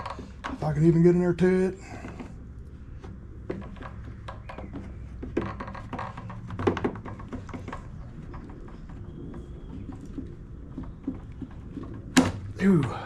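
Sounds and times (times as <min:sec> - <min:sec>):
light clicks and knocks of handling: 0:01.8 - 0:12.2.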